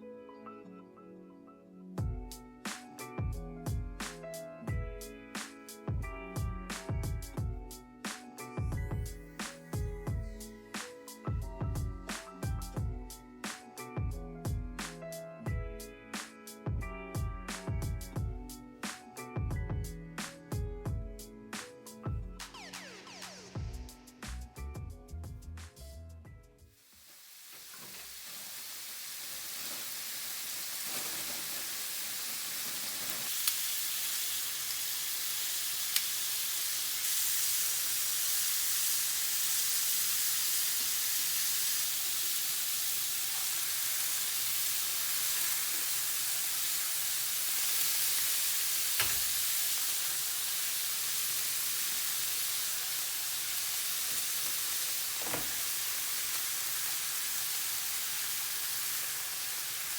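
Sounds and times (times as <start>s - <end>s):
food sizzling in hot oil: 22.5s - 24.4s, 26.7s - 59.9s.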